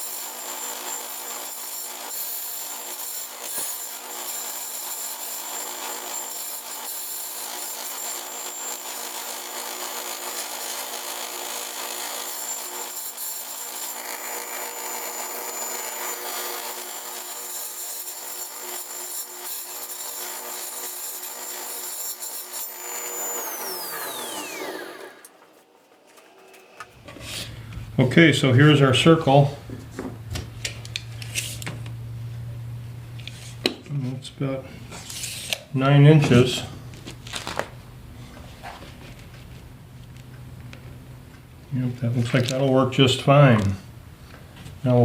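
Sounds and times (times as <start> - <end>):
power saw cutting wood: 0.0 - 27.6.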